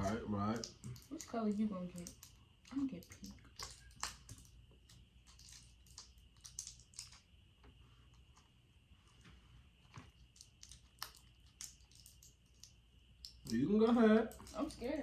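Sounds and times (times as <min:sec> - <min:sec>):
chewing crunchy candy: 0:00.0 - 0:07.4, 0:09.9 - 0:13.7
faint steady whine: 0:00.0 - 0:15.0.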